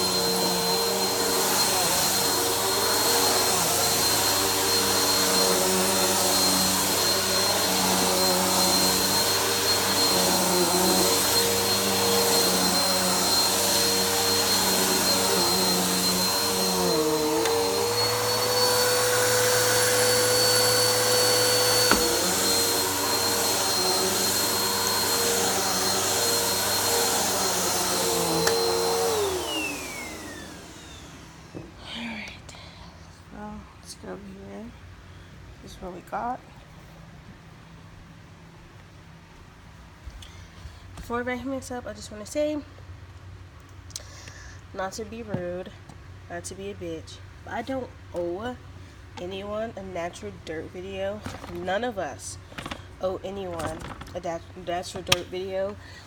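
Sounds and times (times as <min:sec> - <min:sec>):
vacuum cleaner running: 0:00.0 - 0:31.9, 0:49.2 - 0:56.0.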